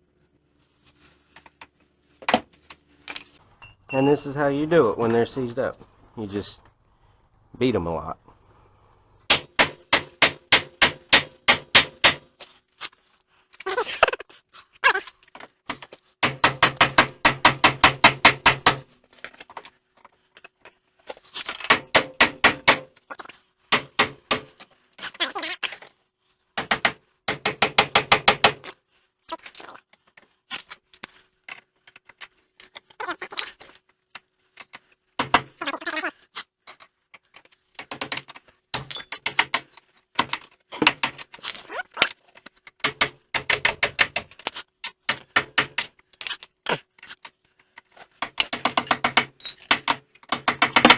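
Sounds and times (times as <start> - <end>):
rapid hammering on metal: 9.3 - 12.3, 16.2 - 18.9, 21.7 - 22.9, 23.7 - 24.6, 26.6 - 28.6, 35.2 - 35.6, 48.2 - 50.9.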